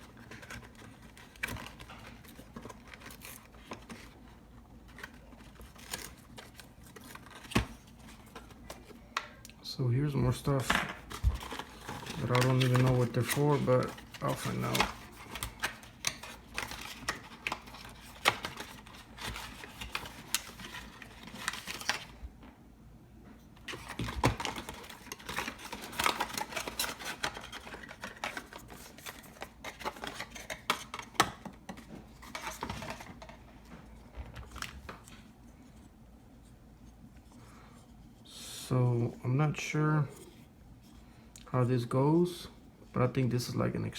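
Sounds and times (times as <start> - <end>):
packaging rustling: 0.0 - 9.0, 10.5 - 22.2, 23.6 - 33.4.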